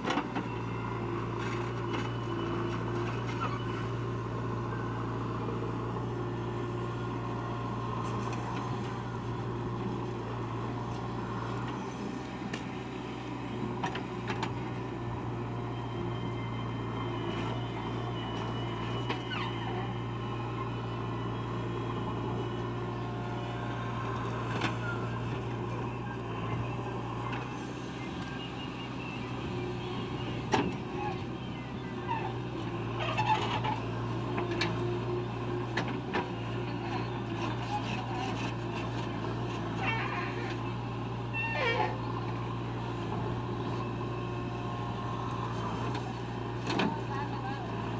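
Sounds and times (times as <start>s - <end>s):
diesel engine running: 0.0s - 47.9s.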